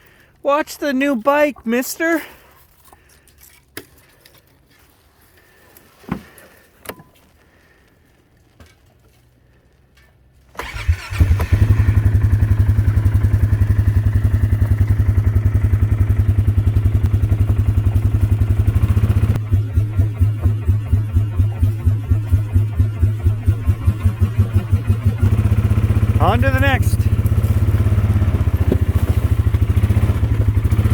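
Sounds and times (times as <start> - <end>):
motorbike engine starting and idling: 10.5 - 30.9.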